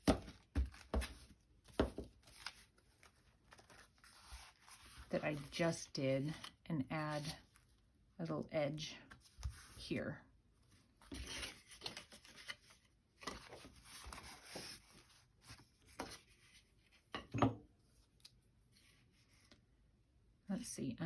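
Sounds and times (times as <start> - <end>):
paper rustling: 0.2 - 5.6, 11.0 - 17.0.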